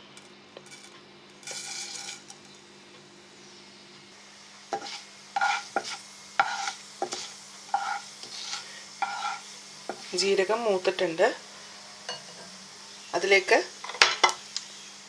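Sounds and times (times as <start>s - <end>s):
seeds sizzling in hot oil: 0.0s - 2.6s, 3.2s - 15.0s
spoon scraping a pan: 0.7s - 2.2s, 4.7s - 10.3s.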